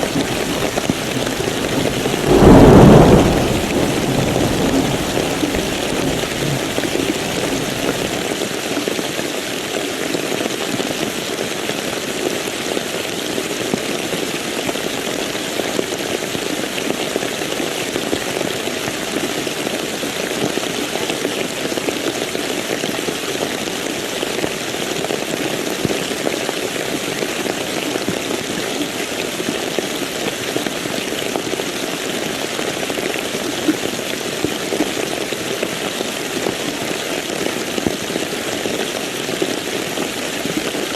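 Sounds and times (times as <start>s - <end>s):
thunder rumble: 0.0s - 8.3s
steady rain falling: 0.0s - 9.6s, 11.3s - 40.9s.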